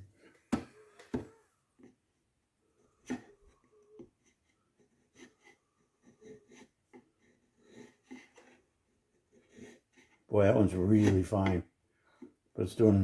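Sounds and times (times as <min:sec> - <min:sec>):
chisel scraping wood: 0:04.2 - 0:11.6.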